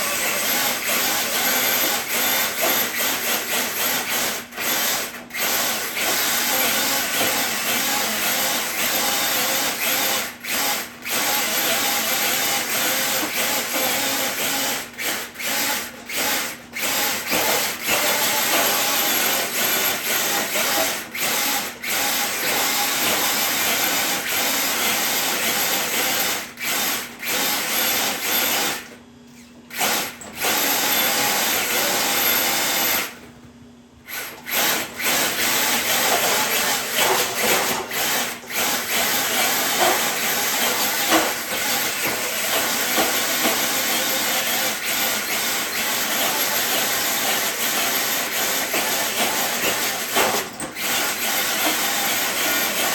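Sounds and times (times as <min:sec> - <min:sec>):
electric motor whining: 0:00.0 - 0:03.0.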